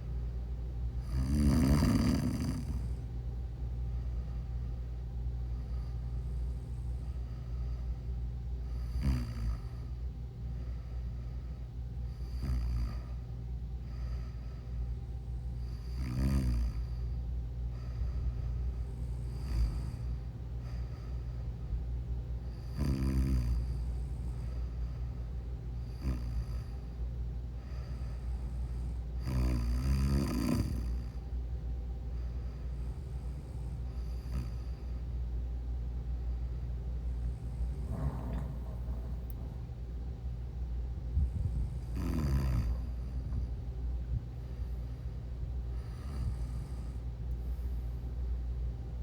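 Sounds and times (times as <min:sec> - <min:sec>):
steady low hum: 0:00.0 - 0:49.0
person snoring: 0:01.0 - 0:03.0, 0:08.8 - 0:09.8, 0:12.2 - 0:13.1, 0:15.7 - 0:17.0, 0:22.6 - 0:23.8, 0:25.8 - 0:26.7, 0:29.2 - 0:31.2, 0:33.3 - 0:34.8, 0:37.2 - 0:39.7, 0:41.6 - 0:43.4.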